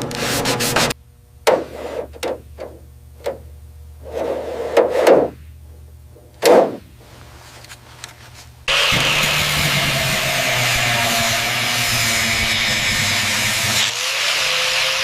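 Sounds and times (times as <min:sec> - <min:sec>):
motor running loudly: 0:08.7 - 0:15.0.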